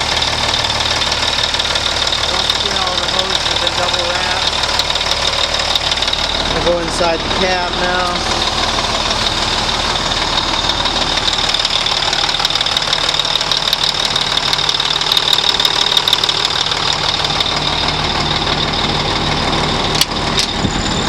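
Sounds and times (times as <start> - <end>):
diesel truck engine idling: 0.0 - 21.0.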